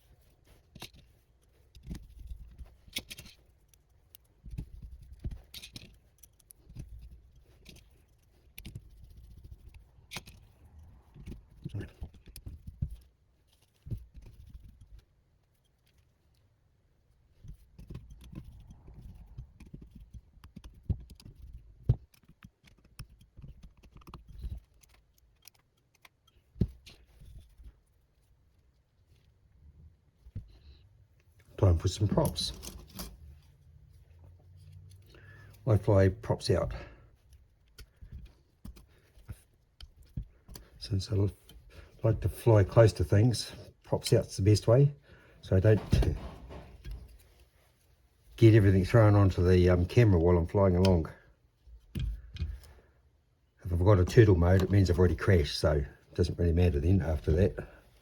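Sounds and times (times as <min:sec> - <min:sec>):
small parts and tools clicking: 0:00.1 - 0:29.5, 0:30.2 - 0:42.0, 0:51.6 - 0:52.8.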